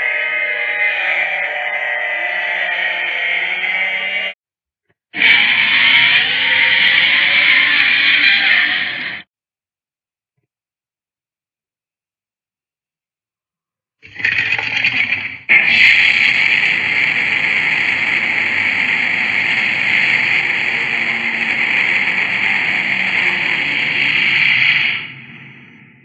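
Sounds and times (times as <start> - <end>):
high-pitched creature screech: 0.0 - 4.4, 5.2 - 9.3, 15.5 - 26.0.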